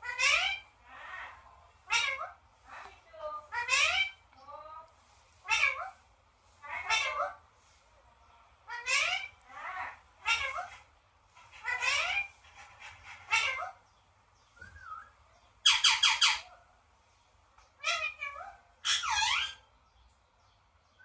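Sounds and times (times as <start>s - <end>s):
parrot squawking calls: 0.0s - 2.4s, 3.4s - 4.2s, 5.4s - 6.0s, 6.6s - 7.4s, 8.7s - 13.8s, 14.8s - 16.6s, 17.8s - 19.7s.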